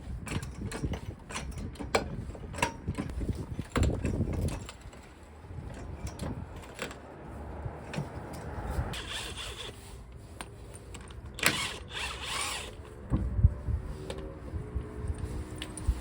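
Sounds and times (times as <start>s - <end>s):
metallic clicks and knocks: 0.2s - 7.1s
tools scraping metal: 7.9s - 12.9s.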